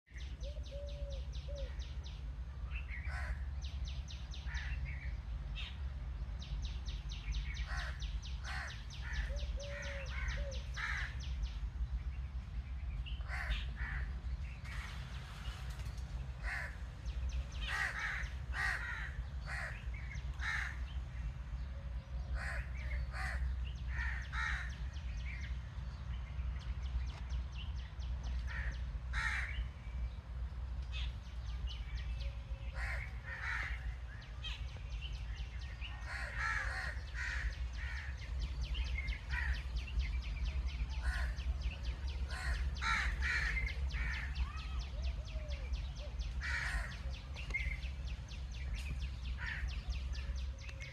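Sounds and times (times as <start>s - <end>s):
crows cawing: 3.0s - 3.5s, 7.6s - 11.3s, 13.2s - 14.2s, 16.4s - 16.8s, 17.6s - 20.9s, 22.4s - 24.8s, 28.5s - 29.6s, 32.8s - 34.0s, 36.0s - 38.2s, 39.3s - 39.7s, 42.3s - 44.4s, 46.4s - 47.0s, 49.4s - 49.7s.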